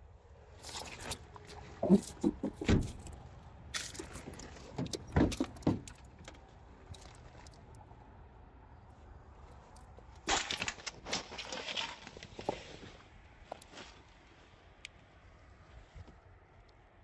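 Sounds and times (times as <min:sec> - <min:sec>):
metallic clatters and knocks: 0:03.9 - 0:06.4.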